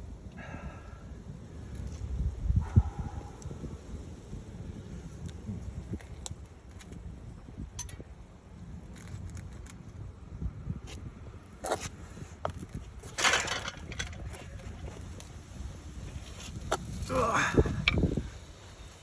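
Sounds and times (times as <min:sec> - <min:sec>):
wind rumbling on microphone: 0:00.0 - 0:19.0
scraping rattle: 0:13.0 - 0:15.1
hand tools clanking on metal: 0:13.1 - 0:14.9.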